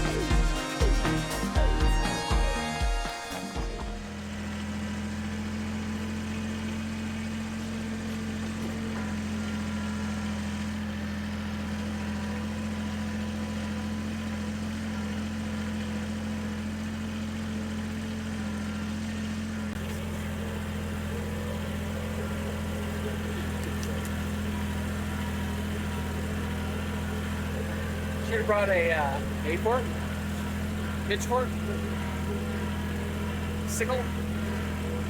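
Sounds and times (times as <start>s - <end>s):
small engine humming: 0.0s - 35.0s.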